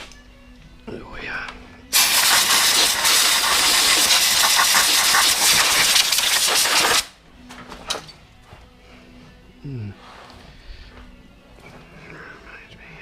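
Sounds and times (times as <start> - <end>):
rushing air hiss: 1.9 - 7.0.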